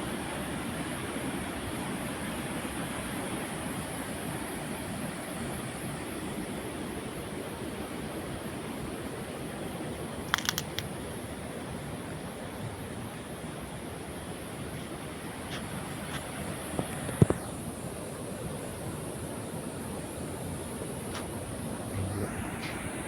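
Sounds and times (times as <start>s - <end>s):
sharp clicks: 10.3s - 10.9s.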